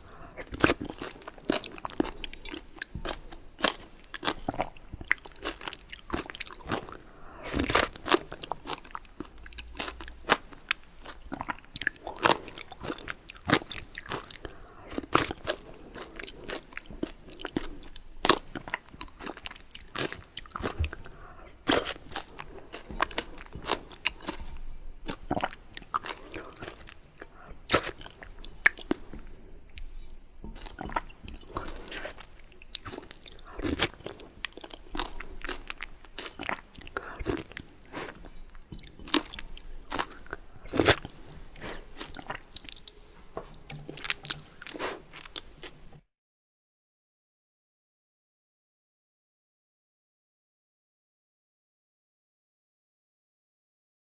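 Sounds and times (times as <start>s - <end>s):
chewing and biting bread: 0.0s - 46.0s
crisp crunches: 39.0s - 43.0s.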